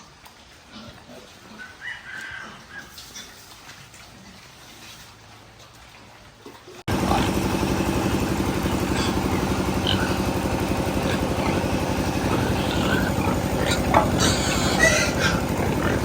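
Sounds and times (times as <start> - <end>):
small engine chugging: 6.9 - 16.0.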